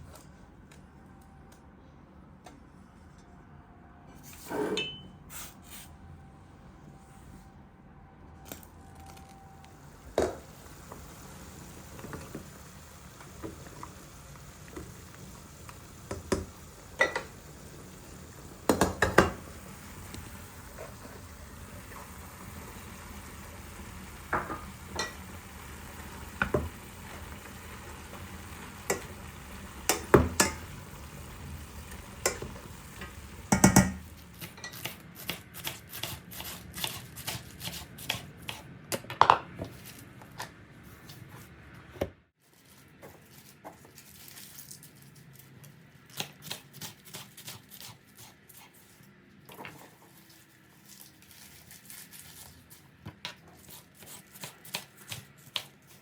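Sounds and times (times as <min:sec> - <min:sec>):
steady background hum: 0:00.0 - 0:56.0
utensils clinking on pots: 0:04.7 - 0:05.1, 0:17.0 - 0:17.3, 0:24.3 - 0:25.3, 0:28.8 - 0:29.2, 0:29.8 - 0:30.8, 0:32.2 - 0:34.9.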